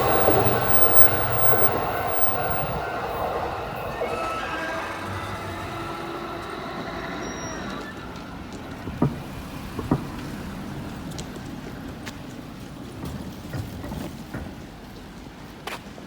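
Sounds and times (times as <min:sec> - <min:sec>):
train rumbling past: 0:00.0 - 0:16.0.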